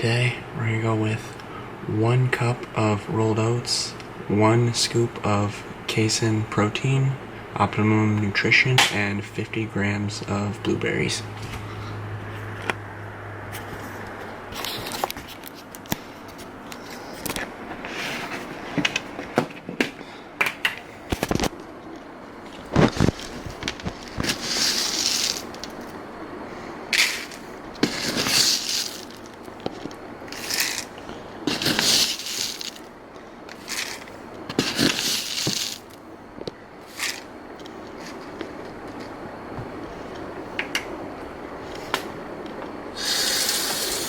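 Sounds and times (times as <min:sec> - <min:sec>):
containers clicking and scraping: 0:14.6 - 0:26.0, 0:26.9 - 0:36.0, 0:36.9 - 0:39.1
dry food pouring: 0:24.0 - 0:25.9, 0:26.9 - 0:29.4, 0:30.3 - 0:32.9, 0:33.6 - 0:36.0.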